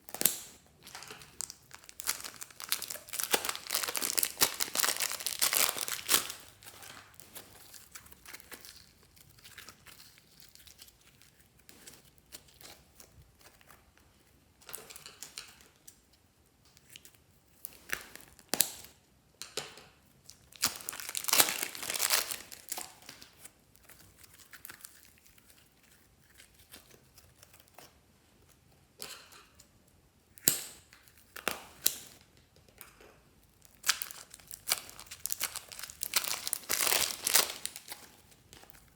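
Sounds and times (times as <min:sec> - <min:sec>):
slime squished by hand: 0:00.1 - 0:10.0, 0:20.5 - 0:23.3, 0:33.7 - 0:38.9.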